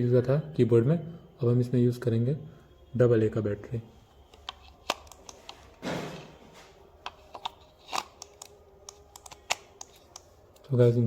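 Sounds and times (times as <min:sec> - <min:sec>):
plastic mouse clicks: 0:04.3 - 0:05.5, 0:07.0 - 0:10.3.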